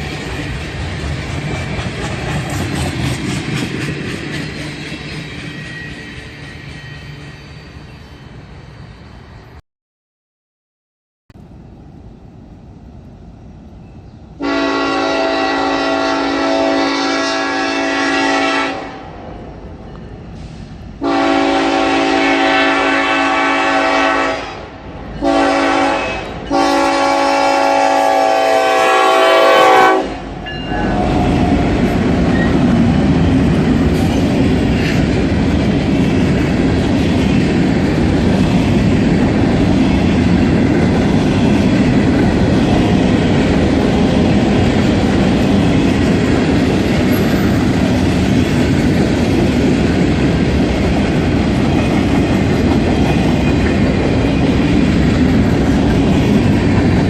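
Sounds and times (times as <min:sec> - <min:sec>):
train wheels clickety-clack: 0:00.0 - 0:07.6, 0:31.1 - 0:57.0
train passing with rumble: 0:00.0 - 0:09.6, 0:11.4 - 0:57.0
locomotive air horn blasts: 0:14.4 - 0:19.1, 0:21.0 - 0:31.6.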